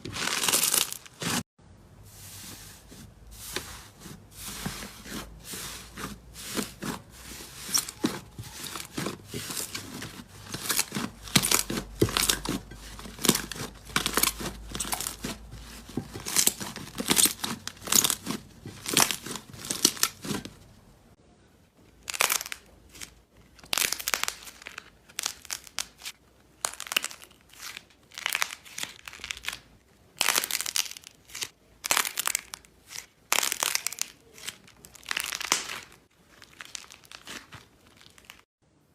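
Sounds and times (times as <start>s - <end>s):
slime crackling and popping: 22.0s - 38.5s.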